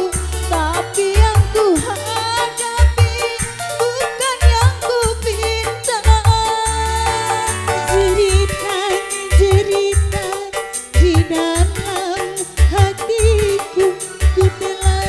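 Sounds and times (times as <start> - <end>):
low drum beats: 0.0 - 10.3
wavering keyboard melody: 0.0 - 15.0.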